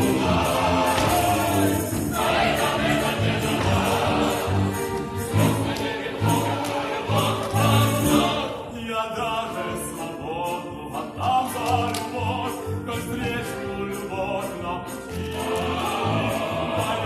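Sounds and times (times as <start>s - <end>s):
musical accompaniment: 0.0s - 17.0s
voices singing: 0.0s - 17.0s.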